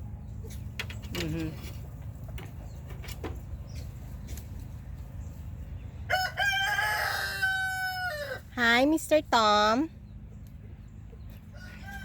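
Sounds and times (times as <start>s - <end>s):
rooster crowing: 6.1s - 8.5s, 11.5s - 12.0s.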